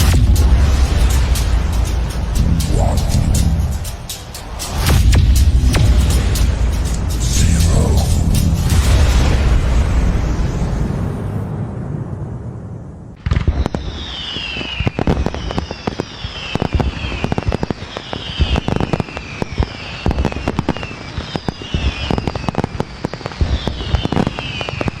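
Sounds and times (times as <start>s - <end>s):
firework boom: 0.0s - 14.3s
falling firework whistle: 13.2s - 25.0s
firework cracks and pops: 13.2s - 25.0s.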